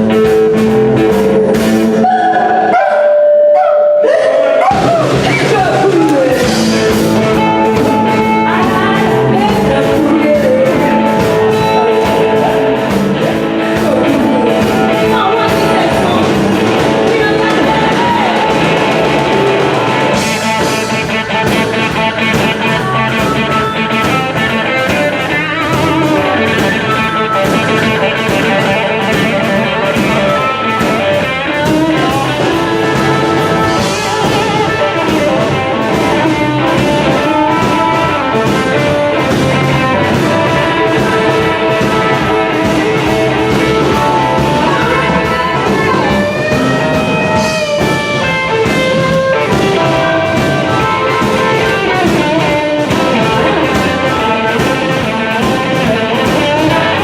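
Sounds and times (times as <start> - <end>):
blues-rock band playing: 0.0 - 57.0
person singing: 0.0 - 57.0.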